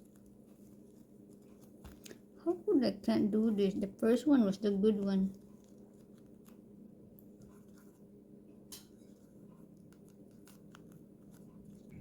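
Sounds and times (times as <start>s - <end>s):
hands wrapping food clicks and rustles: 0.0s - 2.3s, 8.7s - 12.0s
low steady hum: 0.0s - 12.0s.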